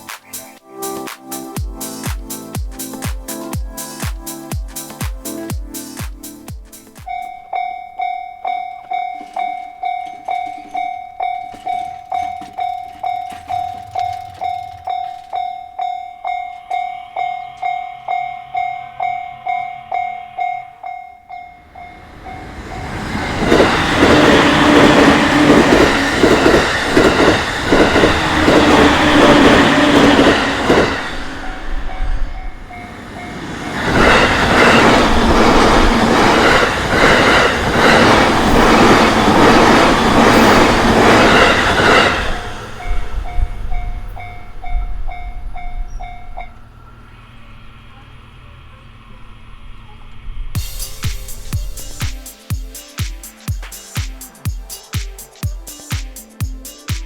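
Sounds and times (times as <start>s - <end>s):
electric train wheel and rail noise: 0.0s - 57.0s
level-crossing bell dinging: 7.1s - 42.2s.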